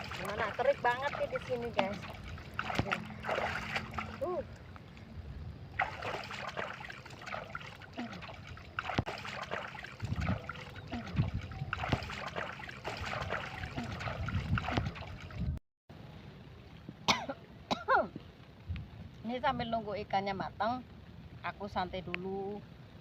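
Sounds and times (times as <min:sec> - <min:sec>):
stream babbling over stones: 0:00.0 - 0:05.0.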